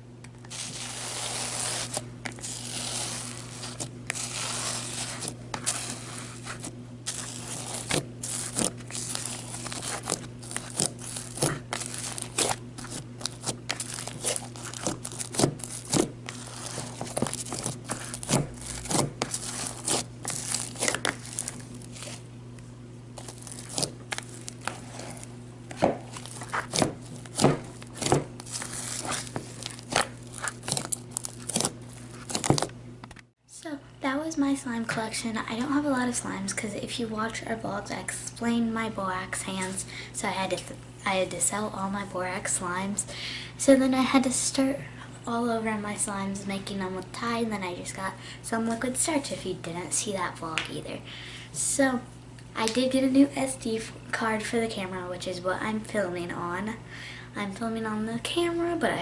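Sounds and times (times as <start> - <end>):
low background hum: 0.0 - 59.0
slime squished by hand: 0.5 - 22.2, 23.2 - 32.7.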